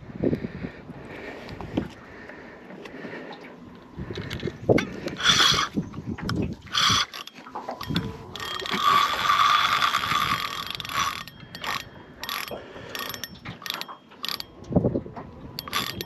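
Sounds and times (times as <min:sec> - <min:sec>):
scattered clicks: 0:04.2 - 0:14.8, 0:15.6 - 0:16.0
fishing reel ratcheting: 0:04.3 - 0:14.6, 0:15.6 - 0:16.0.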